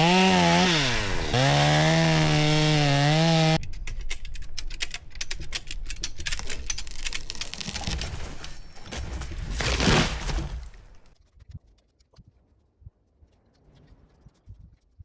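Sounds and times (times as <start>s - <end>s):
chainsaw: 0.0s - 3.6s
wood crackling and snapping: 0.0s - 3.6s, 4.8s - 11.1s.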